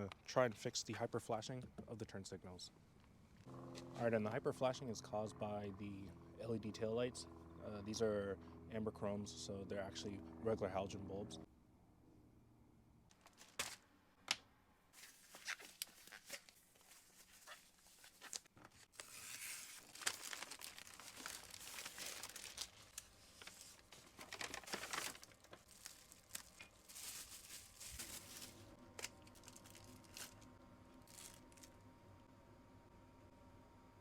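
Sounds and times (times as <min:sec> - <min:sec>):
faint steady hum: 0:00.0 - 0:34.0
plastic packaging crinkling: 0:13.1 - 0:13.8, 0:15.0 - 0:31.8.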